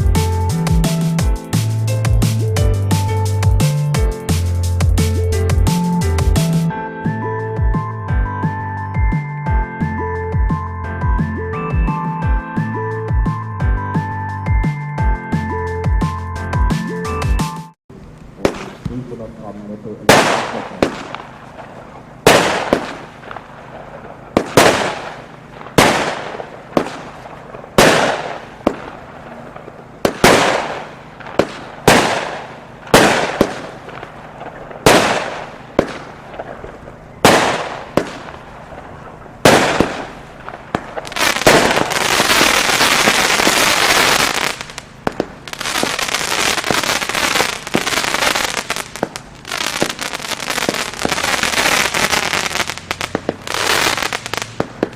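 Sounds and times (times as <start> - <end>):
firework crackling: 18.0 - 54.9
firework bangs: 18.3 - 19.3, 20.0 - 54.9.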